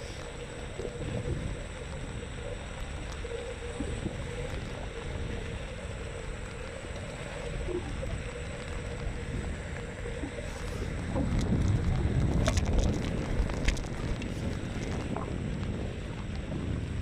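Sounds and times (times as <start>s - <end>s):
faint steady hum: 0.0s - 17.0s
road and wind noise: 8.3s - 17.0s.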